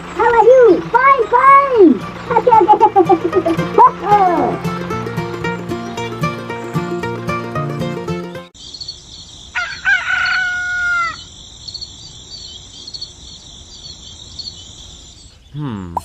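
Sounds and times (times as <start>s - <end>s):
background music: 0.0s - 8.6s
rooster crowing: 9.5s - 11.8s.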